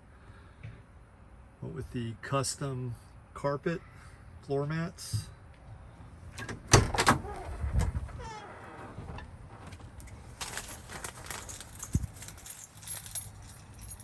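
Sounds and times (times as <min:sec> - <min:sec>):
rustling: 0:10.3 - 0:14.0.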